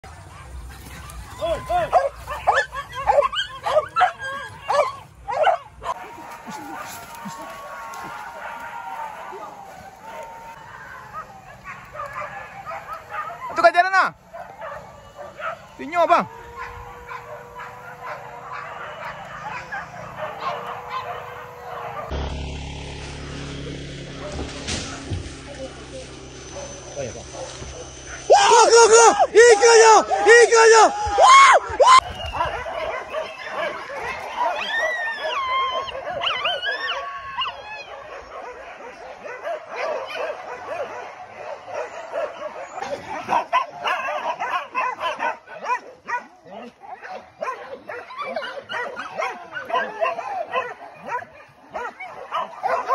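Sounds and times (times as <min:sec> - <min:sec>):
dogs barking and yelping: 0:00.1 - 0:22.2, 0:23.8 - 0:52.9
steady low hum: 0:15.6 - 0:29.4.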